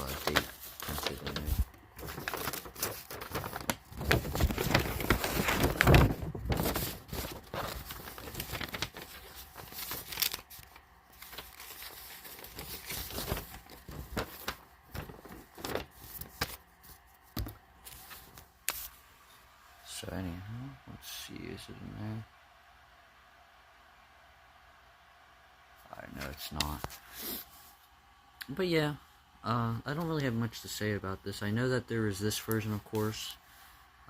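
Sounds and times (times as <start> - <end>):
paper crinkling and rustling: 0.0 - 19.0.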